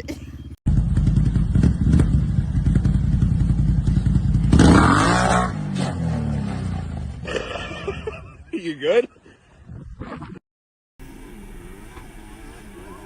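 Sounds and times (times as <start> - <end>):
off-road engine revving: 0.7 - 7.7.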